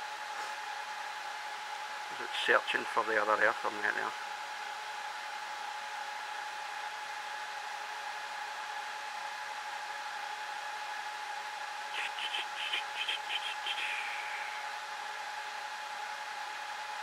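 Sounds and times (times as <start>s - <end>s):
server cooling fans rushing: 4.2s - 17.0s
constant whine: 11.9s - 15.3s
high electronic chirps: 12.0s - 14.7s.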